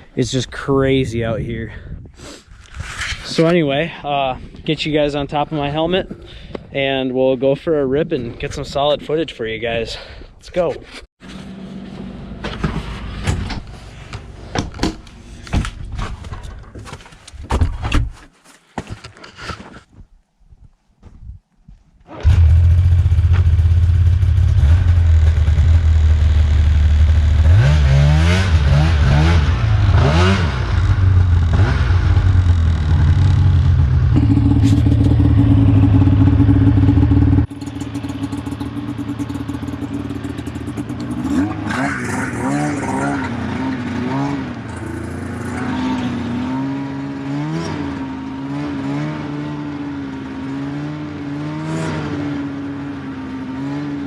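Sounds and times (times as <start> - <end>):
snowmobile engine revving: 22.1 - 54.0.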